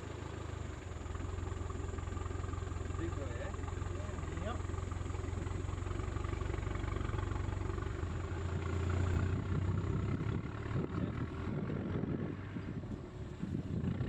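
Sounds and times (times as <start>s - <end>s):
vehicle engine idling: 0.0s - 14.0s.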